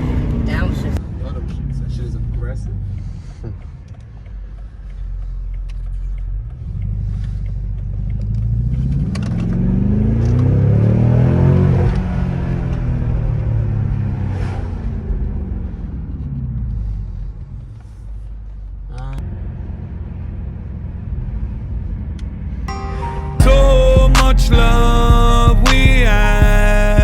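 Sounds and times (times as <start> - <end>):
car engine revving: 0.0 - 22.7, 23.4 - 27.0.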